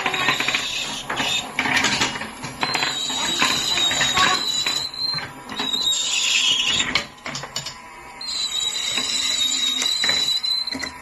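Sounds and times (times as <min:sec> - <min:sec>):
marbles rolling down wooden track: 0:00.0 - 0:06.1.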